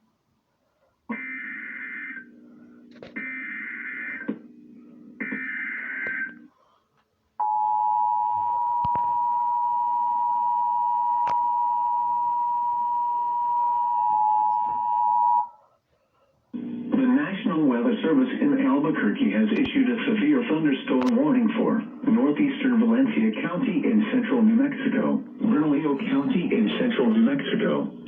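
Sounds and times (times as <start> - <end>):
steady warning alarm tone: 1.1 - 6.5, 7.4 - 15.6.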